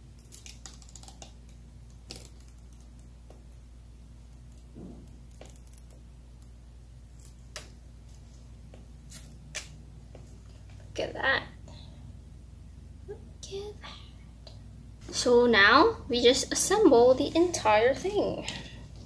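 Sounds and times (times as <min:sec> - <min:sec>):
plastic film peeling crackles: 0:00.1 - 0:03.6.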